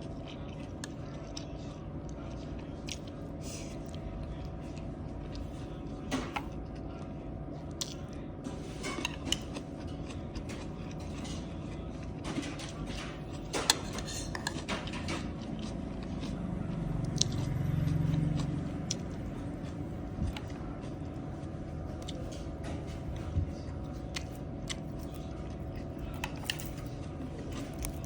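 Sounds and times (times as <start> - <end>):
person chewing and biting: 15.3 - 22.2.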